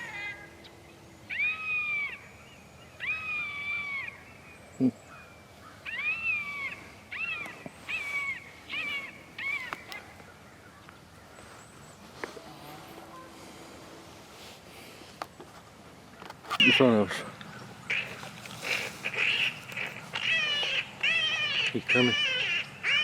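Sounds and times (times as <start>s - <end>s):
electronic animal distress cries: 0.0s - 0.7s, 20.1s - 23.0s.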